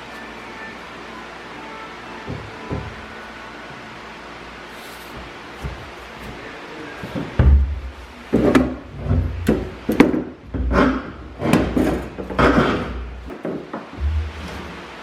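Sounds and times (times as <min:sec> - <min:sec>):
wooden knocks and bumps: 0:07.1 - 0:14.8
low thuds: 0:13.9 - 0:14.8.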